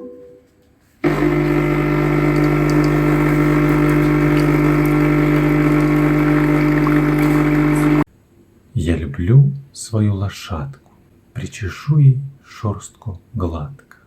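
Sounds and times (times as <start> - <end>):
coffee machine humming: 1.0 - 8.1.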